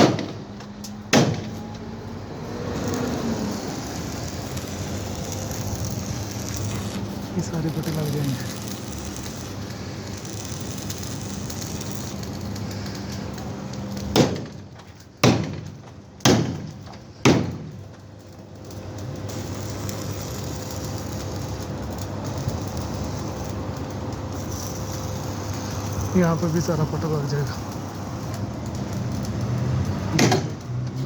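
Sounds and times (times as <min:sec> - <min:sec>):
steady background noise: 0:00.0 - 0:31.0.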